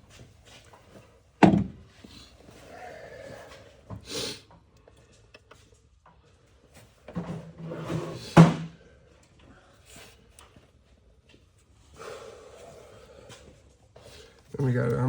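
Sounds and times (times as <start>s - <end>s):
knock of tools: 1.4s - 1.8s.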